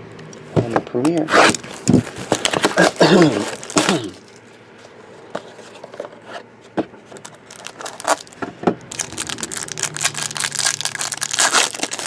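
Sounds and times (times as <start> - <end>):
plastic wrapper crinkling and tearing: 1.5 - 4.4, 7.2 - 12.0
faint low hum: 2.8 - 12.0.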